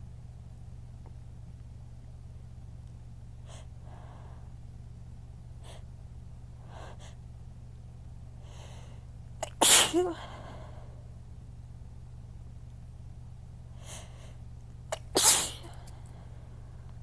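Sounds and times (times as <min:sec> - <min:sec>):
woman sneezing: 0:09.4 - 0:10.4, 0:15.0 - 0:15.9.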